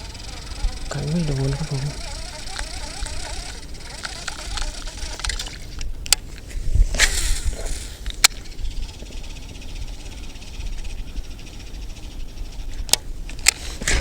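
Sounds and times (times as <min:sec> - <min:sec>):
sharp clicks: 0:02.4 - 0:06.2, 0:12.9 - 0:14.0
short hiss: 0:13.6 - 0:14.0.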